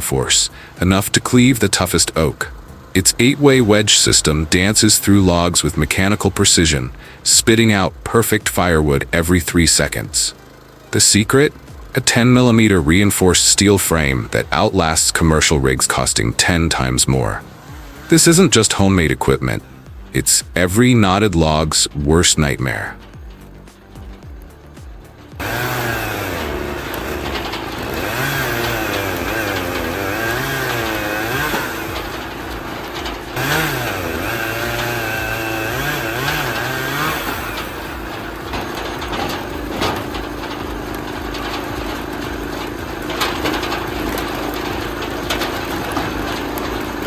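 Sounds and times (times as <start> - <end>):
log splitter engine running: 0.0 - 47.0
short knocks: 23.0 - 47.0.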